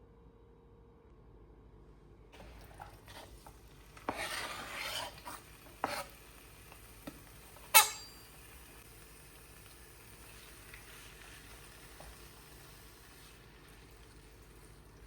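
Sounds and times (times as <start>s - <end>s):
utensils scraping and stirring: 2.4s - 8.4s
utensils knocking on dishes: 7.6s - 8.3s
sharp ringing clink: 7.8s - 8.3s.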